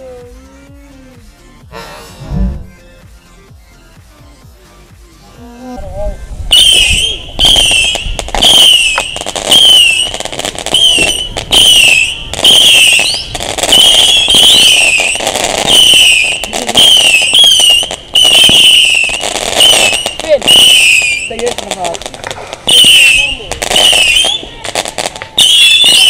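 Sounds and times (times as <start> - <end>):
whistling fireworks: 6.5 - 26.0.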